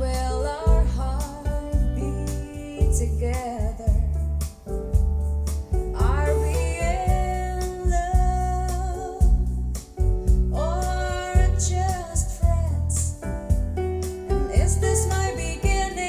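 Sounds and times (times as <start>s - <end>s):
deep repeating bass notes: 0.0s - 16.0s
drum beat: 5.0s - 6.3s, 6.9s - 8.4s, 13.5s - 15.0s, 15.6s - 16.0s
song with singer: 10.2s - 13.3s, 14.2s - 16.0s.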